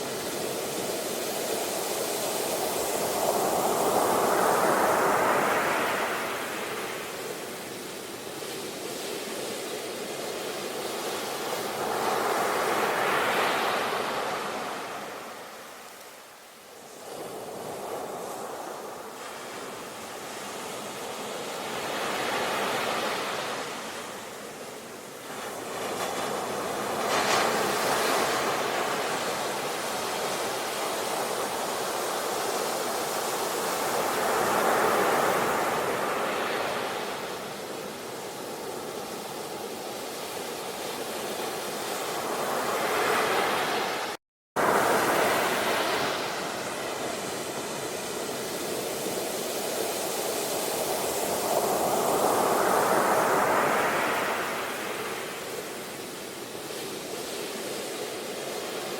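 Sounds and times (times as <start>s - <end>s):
ocean waves breaking: 41.7s - 49.2s.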